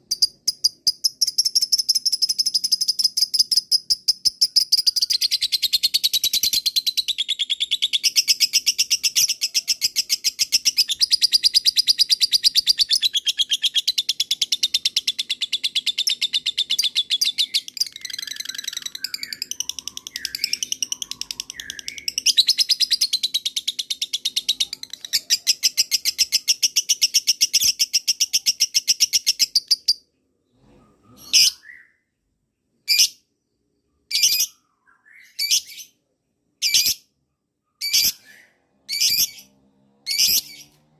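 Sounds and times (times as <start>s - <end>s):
lovebird chattering song: 0.1s - 30.0s, 40.1s - 40.6s.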